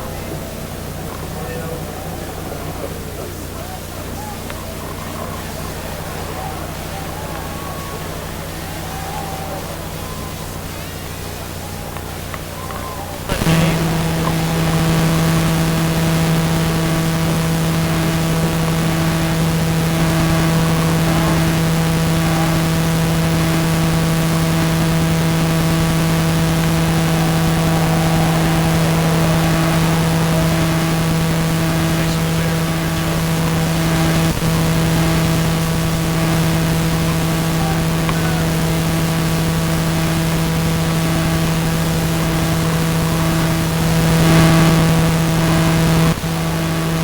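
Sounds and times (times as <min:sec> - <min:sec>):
loud steady hum: 0:00.0 - 0:47.0.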